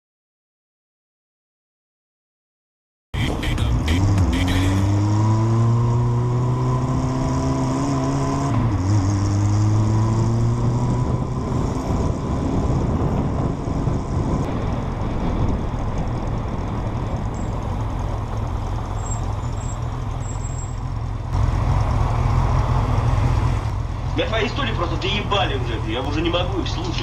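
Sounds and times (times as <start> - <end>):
tyre and road noise: 3.2 - 27.0
vehicle engine accelerating: 3.2 - 27.0.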